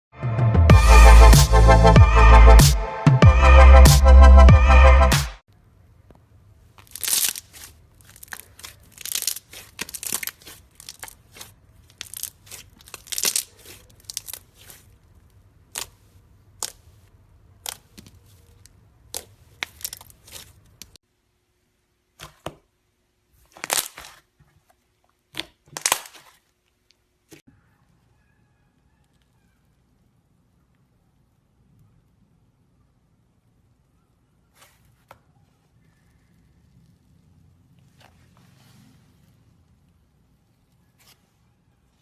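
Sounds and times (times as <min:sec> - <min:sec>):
slime squeezed by hand: 0:06.8 - 0:17.0, 0:17.6 - 0:21.0, 0:23.4 - 0:27.4.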